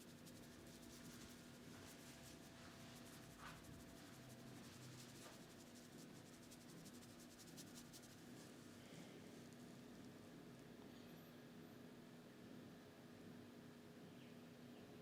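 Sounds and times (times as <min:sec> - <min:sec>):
fingers scratching scalp and hair: 0:00.0 - 0:08.5
low steady hum: 0:00.0 - 0:15.0.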